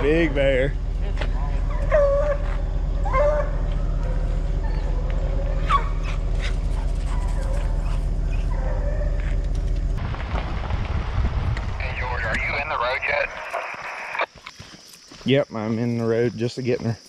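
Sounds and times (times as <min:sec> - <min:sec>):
steady low hum: 0:00.0 - 0:14.3
hounds baying: 0:01.4 - 0:09.5.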